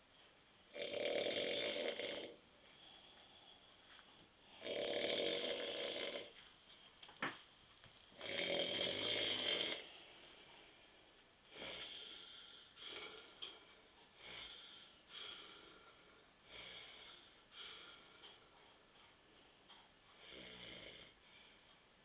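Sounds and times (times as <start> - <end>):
man snoring loudly: 0.7 - 2.4, 4.6 - 6.3, 8.2 - 9.9, 20.3 - 21.1
man breathing wheezily: 11.5 - 18.7.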